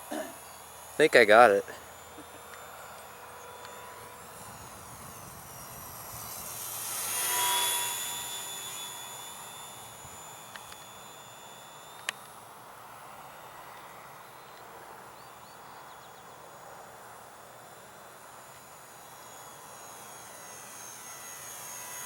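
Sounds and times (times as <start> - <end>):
model plane motor whining by: 0.0 - 22.0
sharp click: 11.9 - 12.4.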